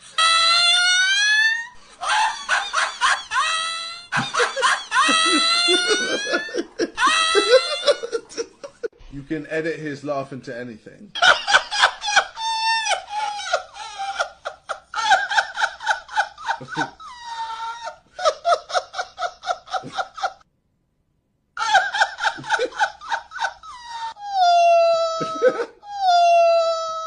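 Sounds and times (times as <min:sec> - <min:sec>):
man's high-pitched laugh: 0:00.2 - 0:08.9, 0:11.2 - 0:20.4, 0:21.6 - 0:26.5.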